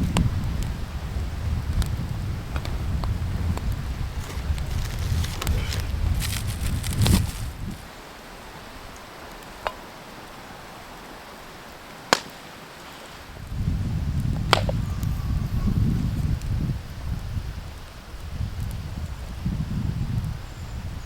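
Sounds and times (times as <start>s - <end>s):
wind rumbling on microphone: 0.0s - 9.0s, 13.2s - 21.0s.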